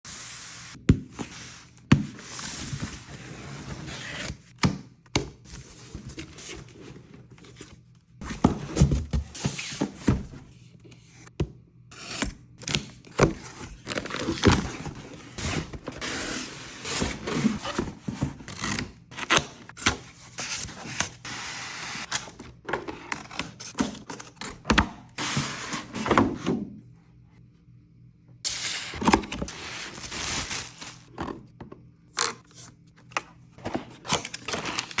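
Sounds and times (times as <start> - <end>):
packaging rustling: 29.1 - 31.1.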